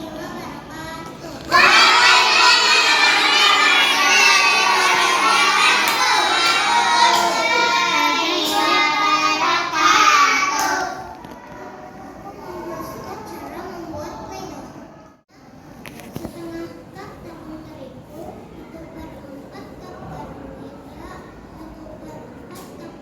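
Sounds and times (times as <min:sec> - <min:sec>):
children singing together: 0:01.4 - 0:12.0.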